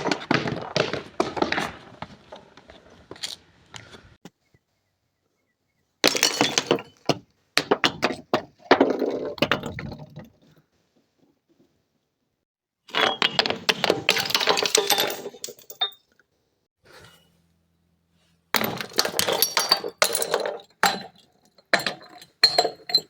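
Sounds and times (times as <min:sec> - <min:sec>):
glass bottles being crushed: 0:06.0 - 0:10.0, 0:12.9 - 0:16.2, 0:18.6 - 0:23.0.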